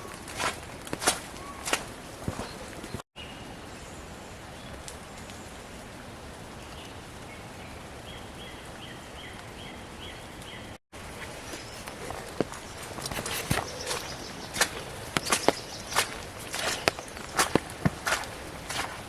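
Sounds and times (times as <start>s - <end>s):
wet forest hiss: 11.0s - 19.0s.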